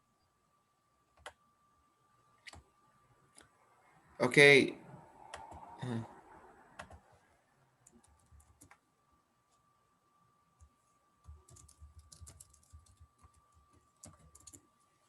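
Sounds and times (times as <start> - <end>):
faint steady whine: 0.0 - 15.0
keyboard typing and clicking: 1.2 - 1.4, 5.3 - 5.7, 6.8 - 7.0, 7.8 - 8.8, 10.6 - 14.7.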